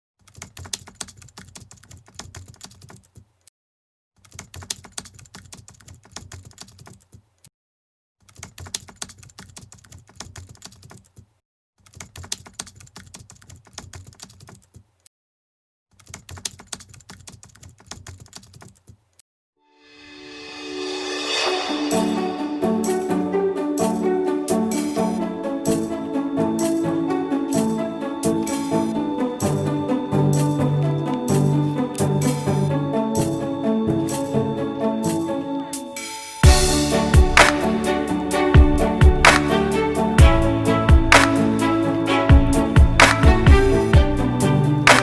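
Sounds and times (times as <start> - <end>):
keyboard typing: 0.2 - 3.3, 4.2 - 7.2, 8.2 - 14.8, 16.0 - 19.0
music: 19.7 - 45.0.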